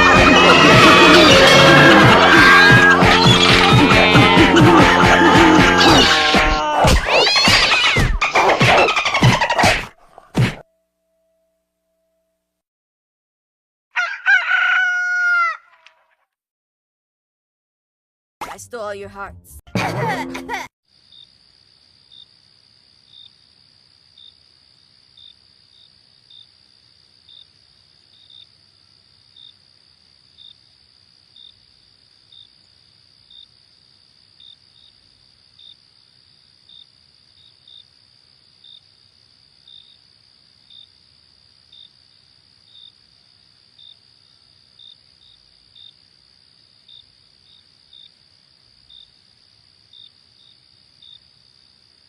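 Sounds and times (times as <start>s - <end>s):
crickets chirping: 20.9s - 52.0s.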